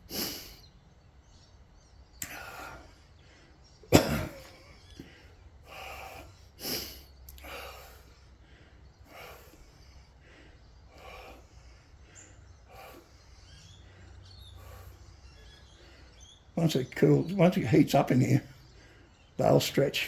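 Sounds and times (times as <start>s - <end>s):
heavy wheezy breathing: 0.0s - 0.8s, 2.2s - 19.4s
man coughing: 3.9s - 4.7s.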